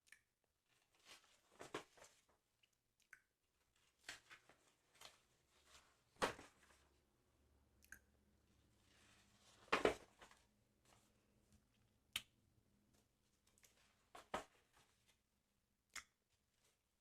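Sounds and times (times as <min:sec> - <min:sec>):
soft rustles and taps: 0:09.4 - 0:11.1.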